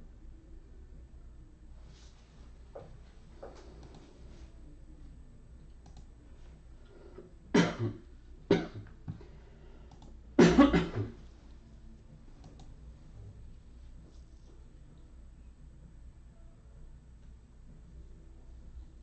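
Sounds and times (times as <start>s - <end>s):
person coughing: 7.6s - 8.9s, 10.4s - 11.2s.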